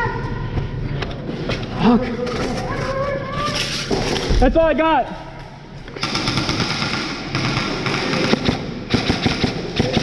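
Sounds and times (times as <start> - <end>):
airsoft guns firing full-auto: 6.0 - 10.0.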